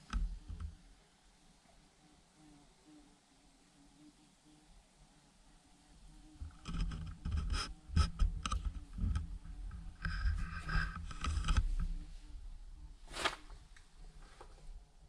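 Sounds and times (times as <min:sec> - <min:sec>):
wood knocking and creaking: 0:06.4 - 0:11.8.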